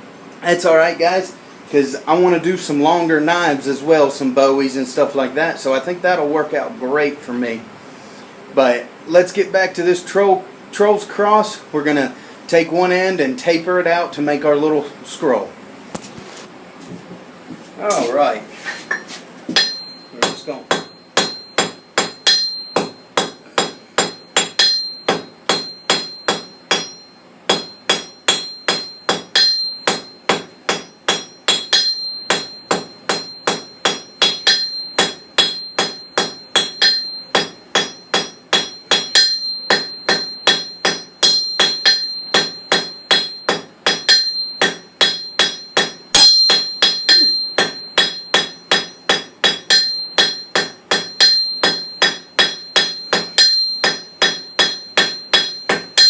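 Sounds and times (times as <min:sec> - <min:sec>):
hammer ringing on anvil: 0:18.9 - 0:56.0.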